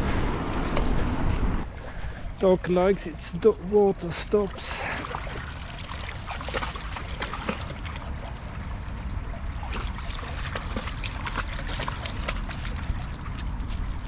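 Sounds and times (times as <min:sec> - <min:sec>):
dog lapping water: 0:04.6 - 0:14.0.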